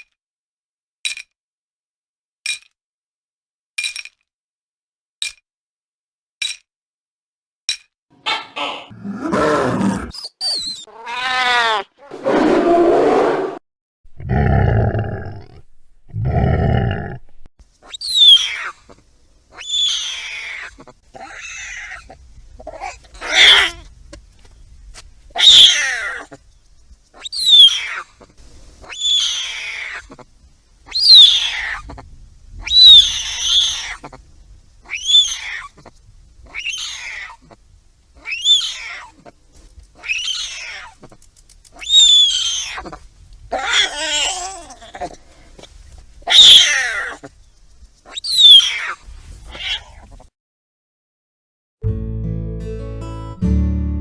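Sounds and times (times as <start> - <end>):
mountain lion calling: 46.3 - 47.3.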